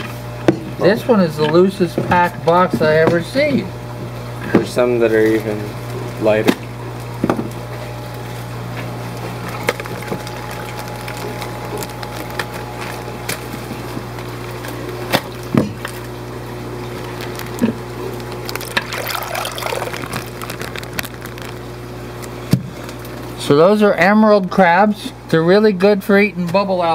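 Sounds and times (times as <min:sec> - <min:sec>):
water pouring and trickling: 0:18.4 - 0:21.7.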